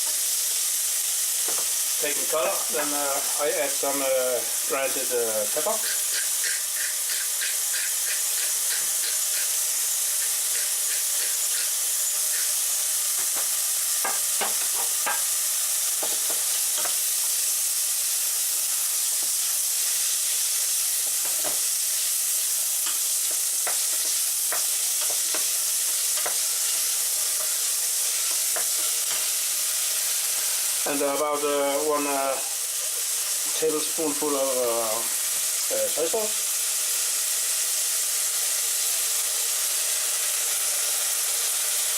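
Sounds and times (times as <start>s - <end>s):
mushrooms and onion sizzling in pan: 0.0s - 41.9s
utensil scraping in pan: 5.2s - 15.4s.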